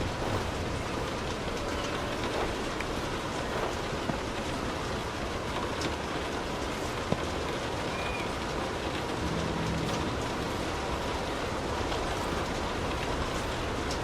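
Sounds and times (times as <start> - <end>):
rain on car roof: 0.0 - 14.0.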